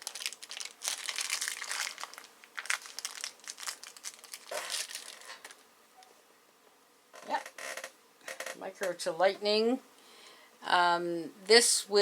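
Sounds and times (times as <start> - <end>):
packaging crinkling: 0.0 - 5.7.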